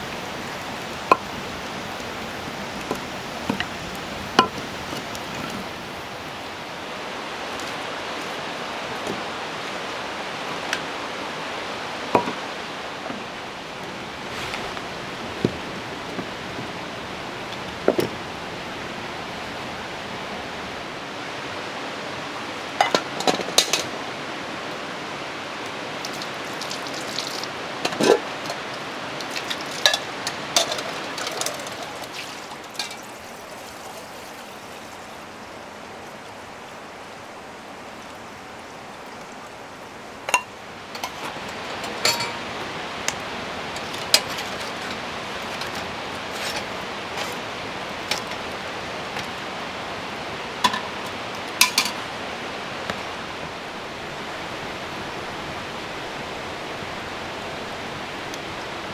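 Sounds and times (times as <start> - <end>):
cookware clinking: 0.0 - 6.5, 12.2 - 20.8, 22.8 - 24.0, 26.1 - 33.3, 40.3 - 52.2
rain hissing: 0.0 - 35.4, 40.2 - 58.9.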